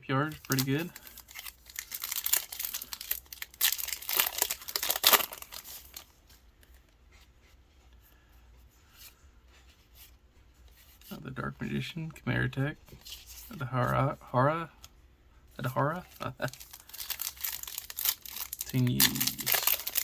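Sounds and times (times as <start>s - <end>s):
wrapper tearing and crinkling: 0.3s - 6.1s, 16.4s - 20.0s.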